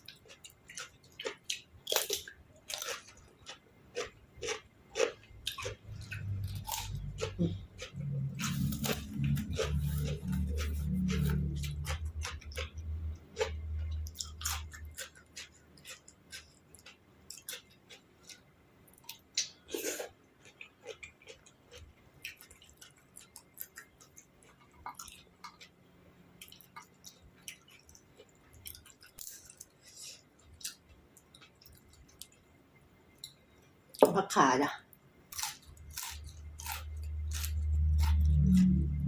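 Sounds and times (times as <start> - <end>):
person chewing and crunching food: 0.0 - 34.0, 34.9 - 39.0
low hum: 5.3 - 15.0, 35.7 - 39.0.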